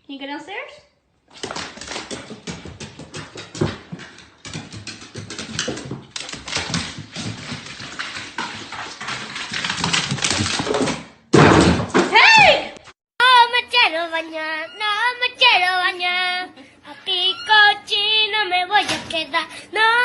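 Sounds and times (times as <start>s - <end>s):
dog clicking and tapping: 1.3s - 11.1s.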